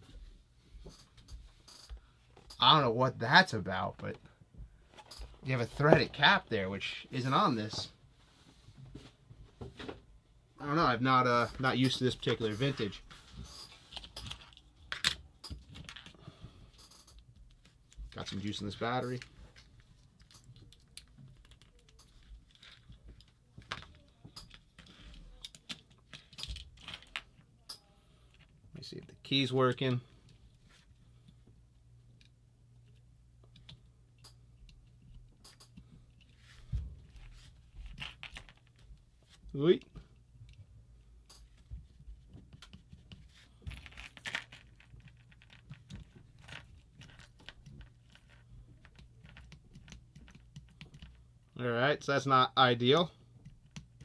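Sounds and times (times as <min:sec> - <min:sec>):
small metallic clicks and rattles: 0:16.8 - 0:17.3, 0:20.2 - 0:28.5, 0:33.4 - 0:36.3
small hard parts clicking: 0:33.5 - 0:36.3.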